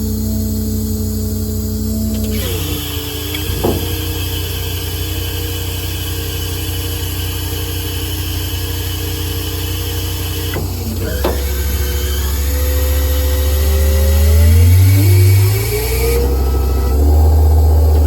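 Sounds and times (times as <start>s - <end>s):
hydraulic whine: 0.0s - 18.0s
truck engine running: 0.0s - 18.0s
short knock: 3.4s - 4.2s.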